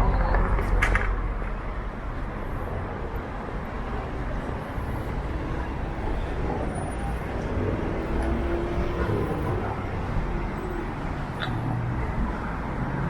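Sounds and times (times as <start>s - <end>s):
city street traffic: 0.0s - 13.0s.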